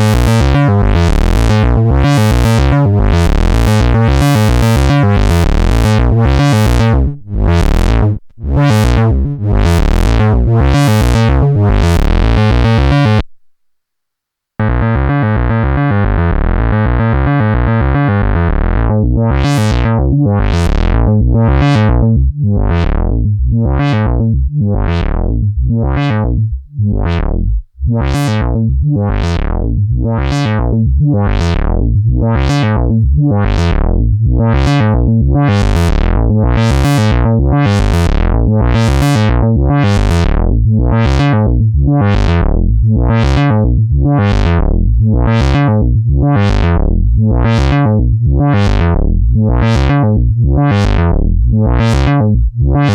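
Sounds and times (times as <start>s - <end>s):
synth drone with sweeping filter: 0.0s - 13.4s, 42.0s - 52.9s.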